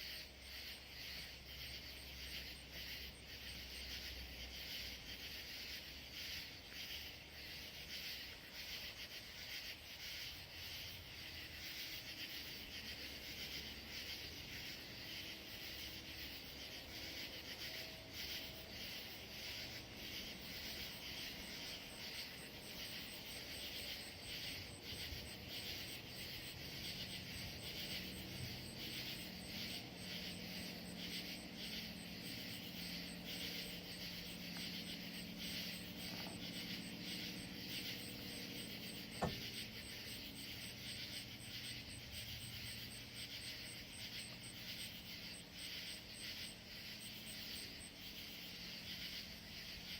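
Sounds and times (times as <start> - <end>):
crickets and insects chirping: 0.0 - 49.9
distant vehicle engine hum: 12.0 - 49.9.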